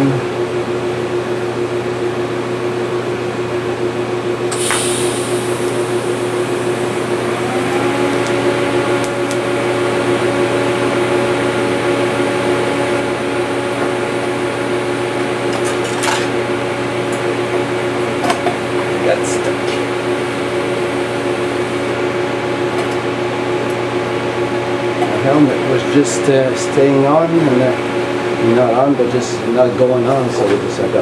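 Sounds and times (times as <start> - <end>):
higher tone: 4.5 - 11.8
welder humming: 4.5 - 14.8.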